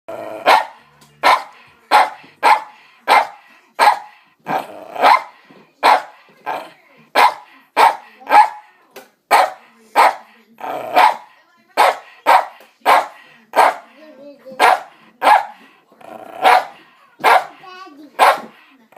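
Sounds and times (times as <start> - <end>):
dog barking: 0.4 - 4.1, 5.0 - 6.2, 7.2 - 8.6, 9.3 - 10.2, 10.9 - 13.9, 14.6 - 15.6, 16.4 - 17.6, 18.2 - 18.6.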